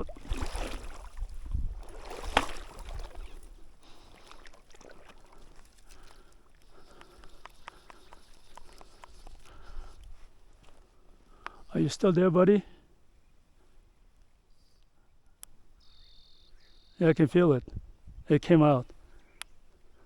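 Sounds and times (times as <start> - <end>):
river water sloshing and splashing: 0.0 - 10.6
light clicks: 6.6 - 9.5.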